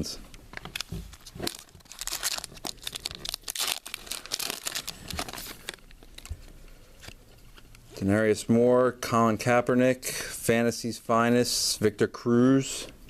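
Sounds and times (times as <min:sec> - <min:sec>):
packaging crinkling and rustling: 0:00.5 - 0:07.7.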